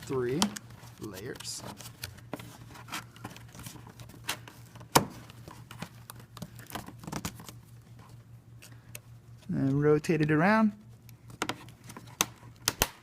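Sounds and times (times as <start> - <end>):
cardboard rustling: 0.0 - 8.3.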